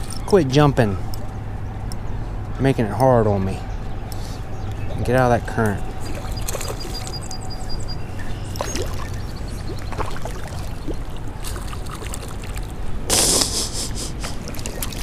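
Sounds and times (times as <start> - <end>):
river current running: 5.3 - 15.0.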